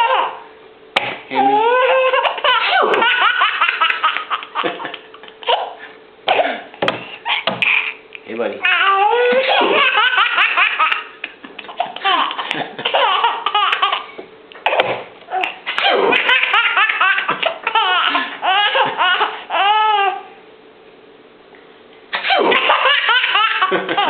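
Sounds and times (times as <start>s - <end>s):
baby laughing: 0.0s - 0.4s, 1.4s - 5.8s, 7.3s - 8.0s, 8.6s - 20.3s, 22.2s - 24.0s.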